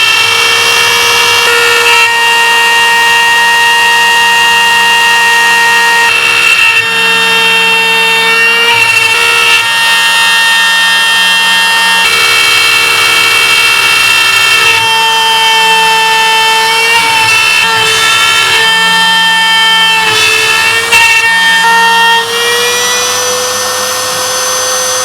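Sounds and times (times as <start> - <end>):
router spindle cutting wood: 0.0 - 25.0.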